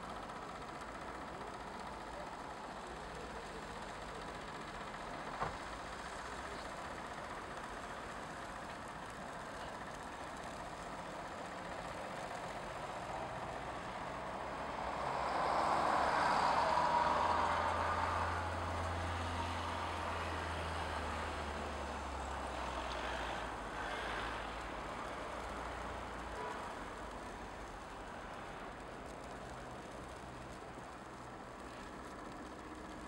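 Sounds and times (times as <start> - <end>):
heavy vehicle engine drone: 0.0 - 33.0
vehicles passing: 13.3 - 33.0.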